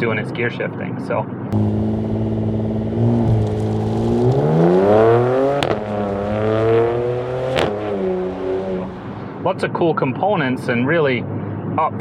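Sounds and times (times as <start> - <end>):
car engine accelerating: 1.6 - 9.4
sharp exhaust crack on upshift: 1.6 - 9.4.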